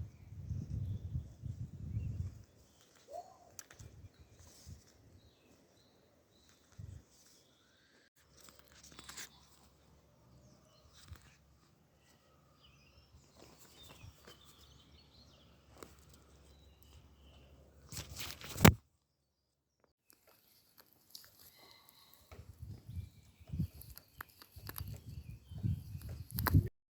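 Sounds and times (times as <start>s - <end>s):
rustling: 8.2s - 9.9s
bird of prey crunching meat: 20.1s - 22.2s, 23.7s - 25.0s.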